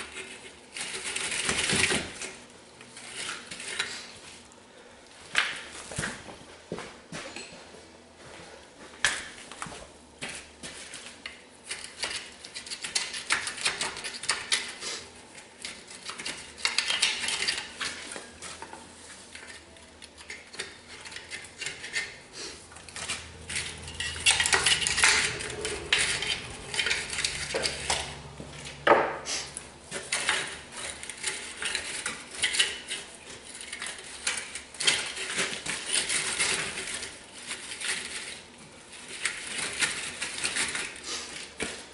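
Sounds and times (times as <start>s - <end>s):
metallic clinking and scraping: 19.3s - 28.8s.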